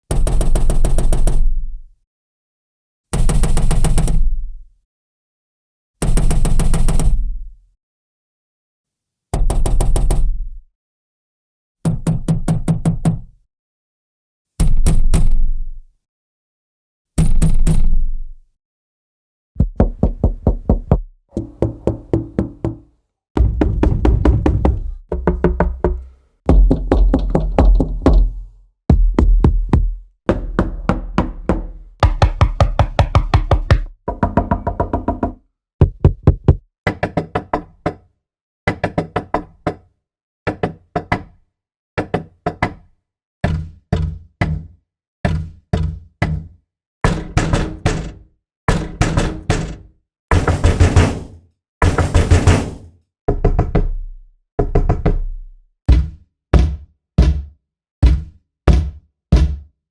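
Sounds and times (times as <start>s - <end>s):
knocking on a door: 19.6s - 37.2s, 48.9s - 53.8s, 55.9s - 59.7s.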